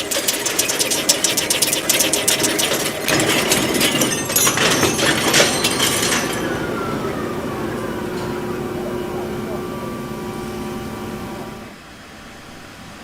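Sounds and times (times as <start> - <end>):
metal-cutting machine clicking: 0.0 - 9.0
machine drone: 0.0 - 11.8.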